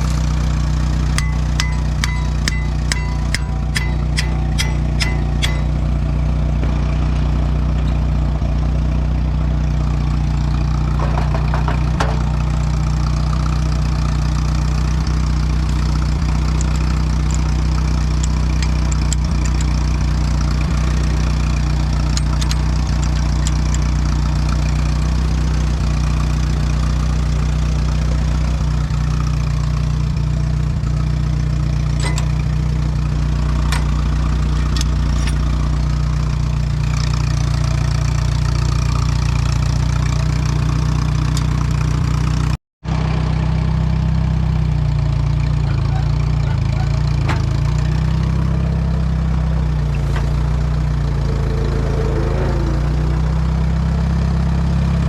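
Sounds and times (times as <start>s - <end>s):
tractor engine idling: 0.0s - 55.0s
sharp clicks: 1.2s - 5.8s, 16.5s - 19.8s, 22.1s - 23.9s.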